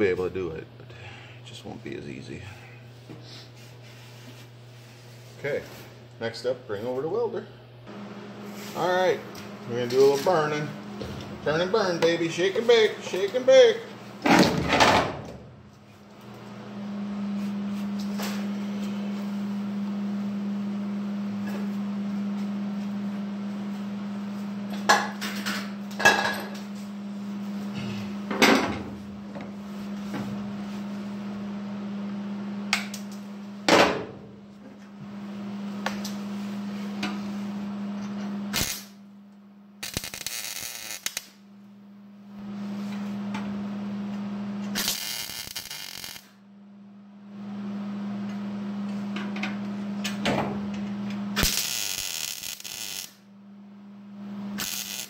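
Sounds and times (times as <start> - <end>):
steady low hum: 0.0 - 55.0
welding arc crackling and hissing: 38.5 - 39.0, 39.8 - 41.4, 44.8 - 46.4, 51.4 - 53.2, 54.6 - 55.0.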